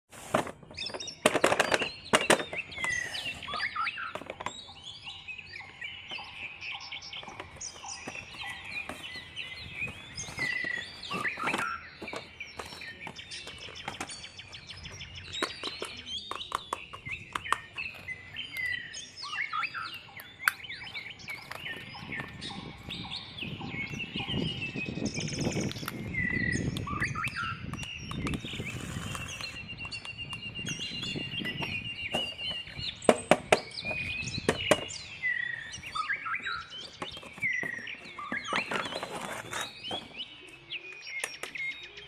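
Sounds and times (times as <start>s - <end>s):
small birds chirping: 0.2s - 42.0s
sharp clicks and knocks: 15.3s - 17.9s.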